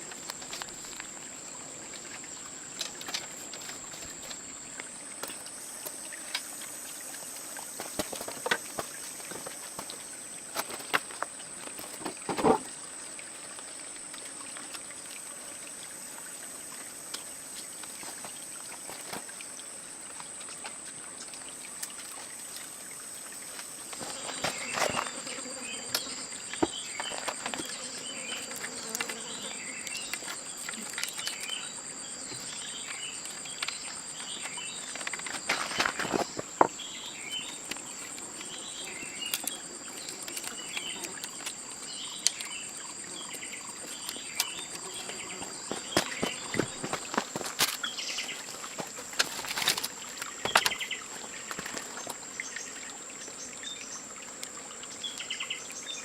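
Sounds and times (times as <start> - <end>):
insect chorus: 0.0 - 56.0
handling clicks and rustling: 43.8 - 52.2.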